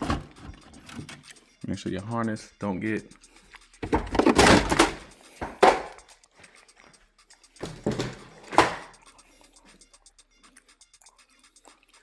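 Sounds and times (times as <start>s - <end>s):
sharp clicks of parts: 3.5s - 6.2s
scraping rustling handling noise: 3.8s - 6.6s.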